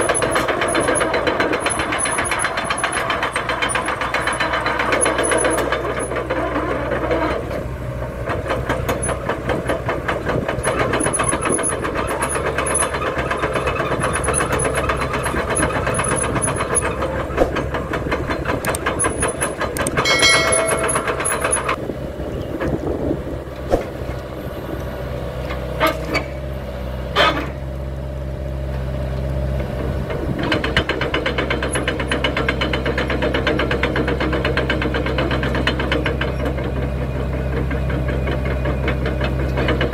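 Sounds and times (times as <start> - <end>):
sharp metallic knocks: 0.0 - 6.4, 8.2 - 21.8
excavator diesel engine: 0.0 - 39.9.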